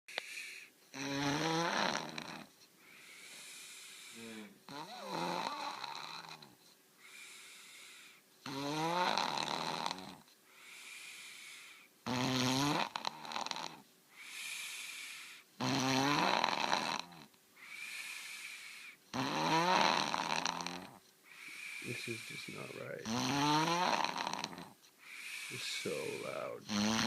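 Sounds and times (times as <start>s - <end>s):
loud snoring: 0.2s - 2.5s, 3.3s - 6.5s, 8.4s - 10.2s, 11.0s - 27.0s
breathy sounds: 24.5s - 27.0s.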